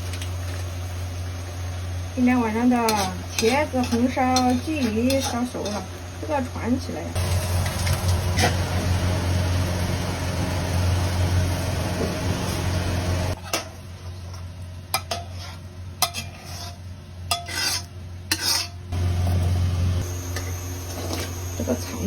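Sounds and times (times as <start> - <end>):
food sizzling in a wok: 0.0 - 22.0
metal spatula scraping a wok: 2.4 - 6.4, 7.7 - 8.8, 13.3 - 19.5
low hum: 18.9 - 22.0.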